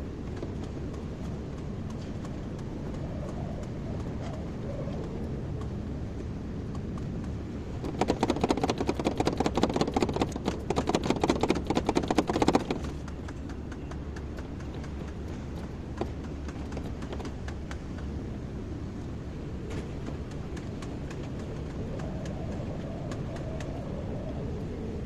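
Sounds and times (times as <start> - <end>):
rapid dense clattering: 7.8 - 17.4
excavator running: 7.8 - 18.1.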